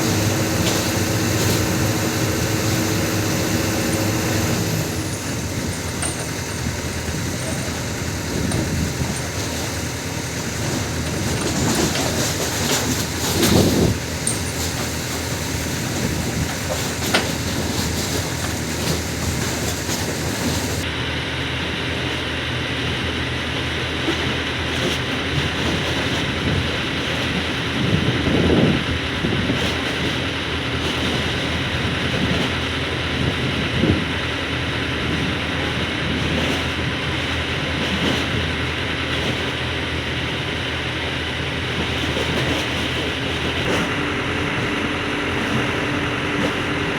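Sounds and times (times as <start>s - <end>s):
metal clanking: 0.0s - 20.8s
excavator diesel engine: 0.0s - 46.9s.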